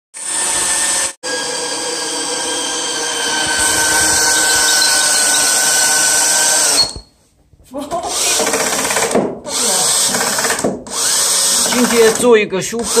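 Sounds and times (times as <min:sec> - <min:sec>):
electric power tool whining: 0:00.2 - 0:07.1.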